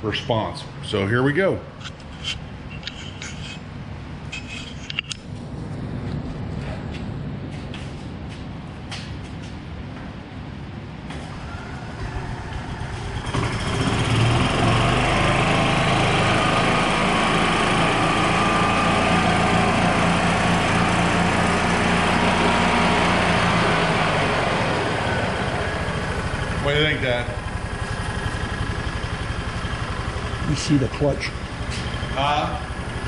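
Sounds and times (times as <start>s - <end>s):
golf cart engine starting and running: 11.0s - 33.0s.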